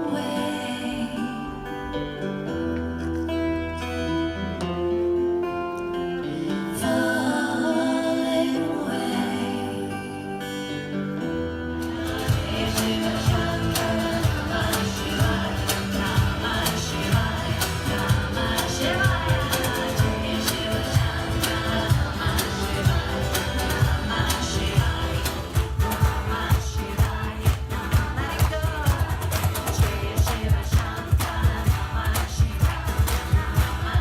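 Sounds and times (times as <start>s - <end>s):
singing: 0.0s - 1.8s, 6.6s - 10.6s, 11.8s - 34.0s
live band music: 11.6s - 34.0s
drum beat: 12.1s - 34.0s.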